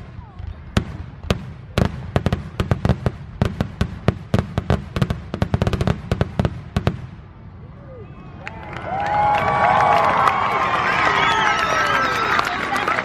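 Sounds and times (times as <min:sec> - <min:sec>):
fireworks bangs and crackles: 0:00.0 - 0:07.4.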